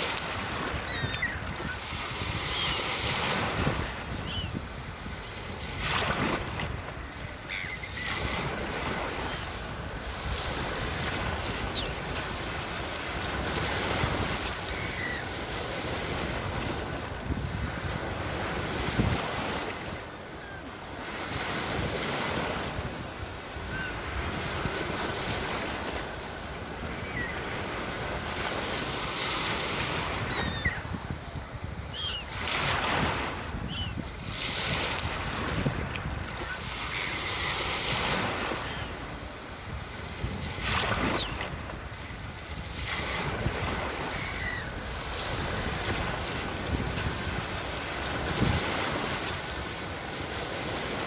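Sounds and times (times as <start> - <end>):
sea waves breaking: 0.0 - 51.0
faint high bird calls: 0.8 - 1.4, 14.7 - 15.3, 31.9 - 32.3.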